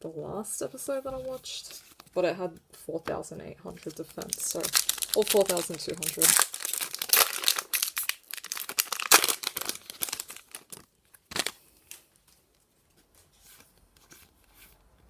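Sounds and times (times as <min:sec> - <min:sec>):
foil pack tearing and crinkling: 0:04.2 - 0:12.0.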